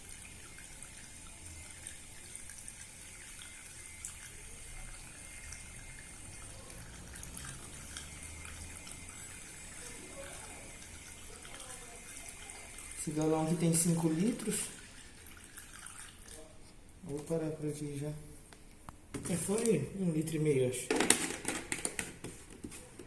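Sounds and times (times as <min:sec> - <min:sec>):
liquid trickling through funnel: 0:00.0 - 0:17.5.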